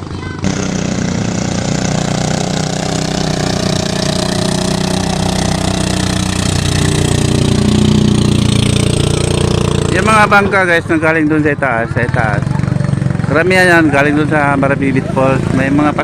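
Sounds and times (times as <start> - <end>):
boat engine running: 0.0 - 11.4.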